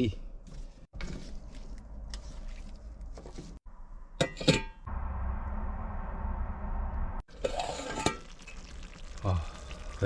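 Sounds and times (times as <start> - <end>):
utensil clanking on metal pot: 7.3 - 8.7.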